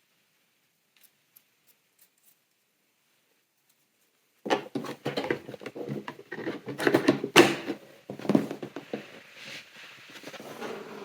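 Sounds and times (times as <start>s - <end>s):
packaging rustling and clicking: 4.5s - 9.2s.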